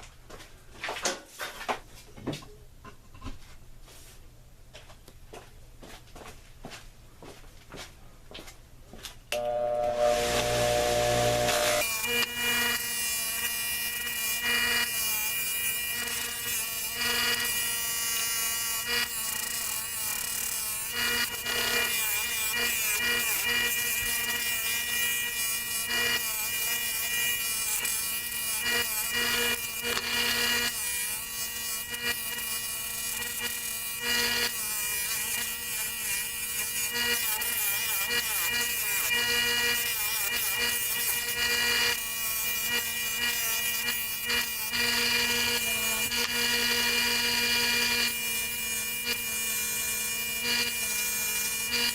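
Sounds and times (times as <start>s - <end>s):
belt sander motor whine: 9.4s - 51.9s.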